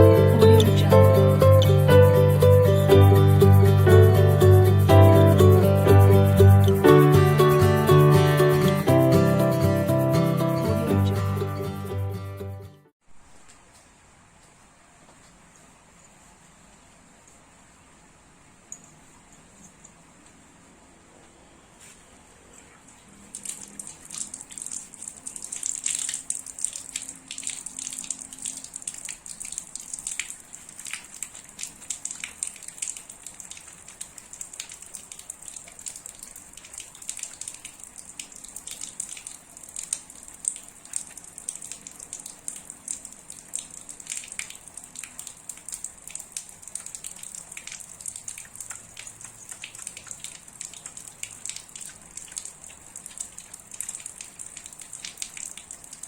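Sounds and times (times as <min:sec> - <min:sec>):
tap water splashing on hands: 0:23.3 - 0:56.0.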